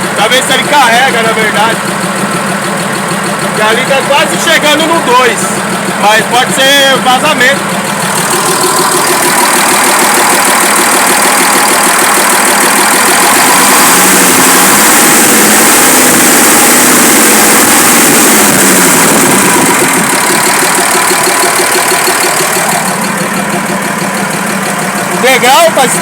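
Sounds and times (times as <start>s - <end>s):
diesel truck engine running: 0.0s - 26.0s.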